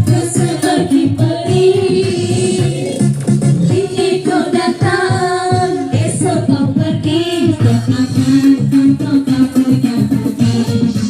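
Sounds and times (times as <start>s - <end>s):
keyboard-led band music: 0.0s - 11.0s
person singing: 3.7s - 11.0s.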